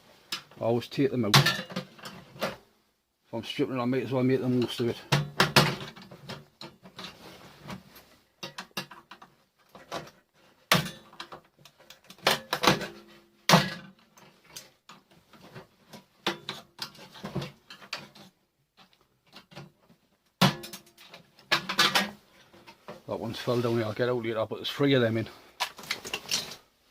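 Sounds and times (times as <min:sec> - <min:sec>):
metal parts knocking and clinking: 0:20.4 - 0:22.2.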